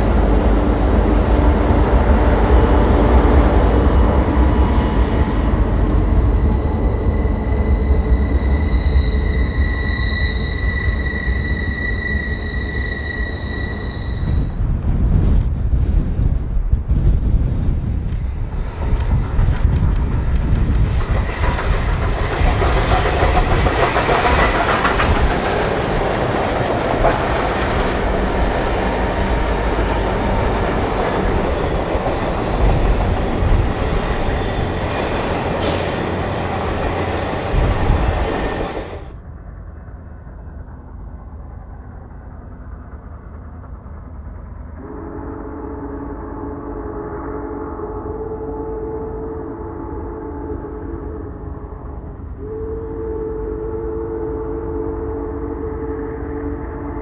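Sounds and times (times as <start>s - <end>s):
steam train rumbling past: 0.0s - 57.0s
wheels clattering on rails: 18.1s - 39.4s.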